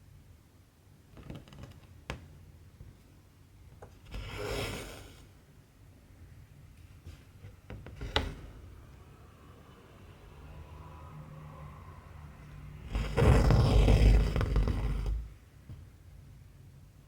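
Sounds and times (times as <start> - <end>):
needle and thread on fabric: 3.8 - 5.3, 12.8 - 15.4.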